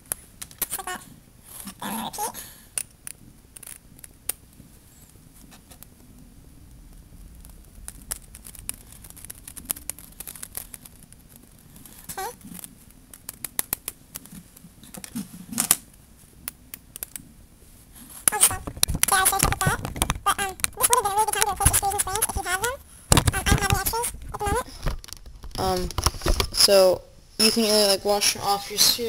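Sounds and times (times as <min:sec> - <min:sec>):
plastic pieces clicking: 0:02.7 - 0:04.4, 0:07.4 - 0:15.8, 0:18.3 - 0:26.6.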